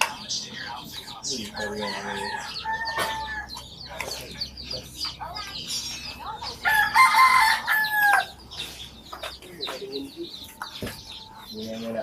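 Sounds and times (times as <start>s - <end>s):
chickens clucking and chirping: 0.0s - 12.0s
rooster crowing: 1.6s - 3.6s, 6.6s - 8.4s.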